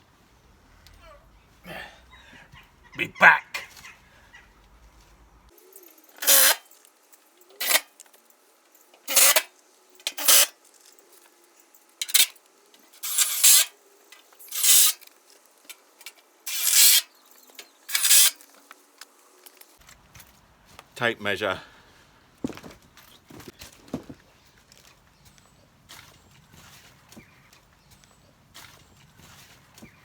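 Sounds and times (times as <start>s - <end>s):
short rasping scrapes: 6.2s - 6.6s, 13.0s - 13.7s, 14.5s - 15.0s, 16.5s - 17.1s, 17.9s - 18.4s.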